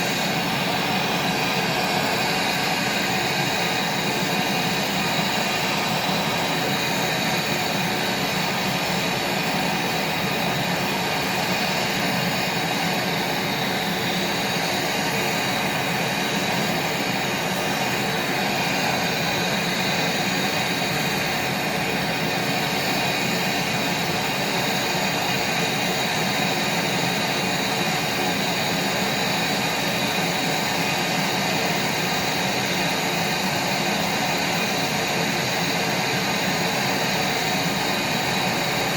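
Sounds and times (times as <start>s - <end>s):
gas torch flame roaring: 0.0s - 38.9s.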